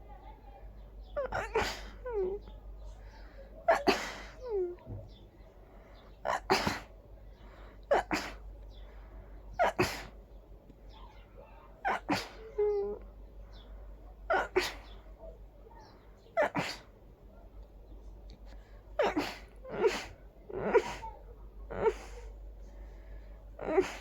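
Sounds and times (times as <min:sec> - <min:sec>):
person sneezing: 0:01.2 - 0:02.3, 0:03.7 - 0:04.8, 0:06.3 - 0:06.9, 0:07.9 - 0:08.5, 0:09.6 - 0:10.2, 0:11.8 - 0:12.6, 0:14.3 - 0:15.0, 0:16.4 - 0:16.9, 0:19.0 - 0:22.3, 0:23.6 - 0:24.0.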